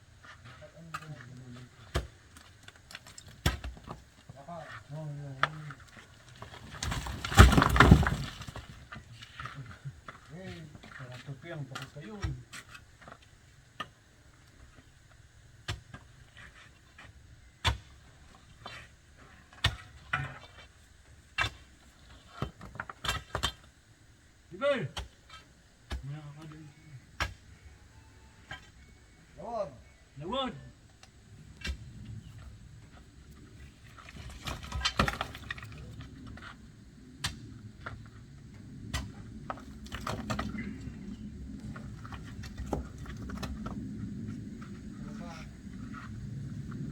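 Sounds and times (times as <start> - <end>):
knocks and thuds from masonry work: 0.2 - 15.0, 15.6 - 23.8, 24.9 - 27.5, 31.4 - 36.6, 38.9 - 43.8
low steady rumble: 24.4 - 46.9.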